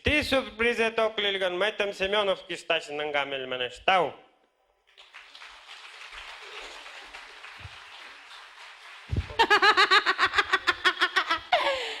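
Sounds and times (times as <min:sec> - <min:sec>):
faint applause: 0:05.0 - 0:09.6
person laughing loudly: 0:09.2 - 0:12.0.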